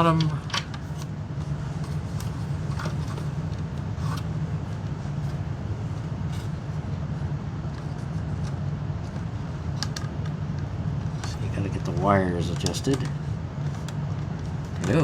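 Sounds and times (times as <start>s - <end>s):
low background hum: 0.0s - 15.0s.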